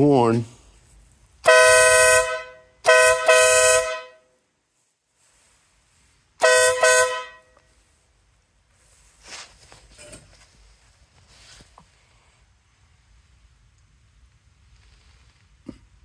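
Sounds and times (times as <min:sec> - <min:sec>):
two-tone motorcycle air horn: 0:01.4 - 0:04.3, 0:06.4 - 0:07.7.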